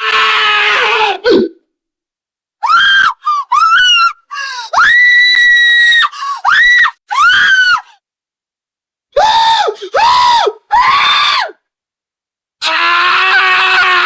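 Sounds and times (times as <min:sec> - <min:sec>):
person screaming: 0:00.0 - 0:01.5, 0:12.6 - 0:14.0.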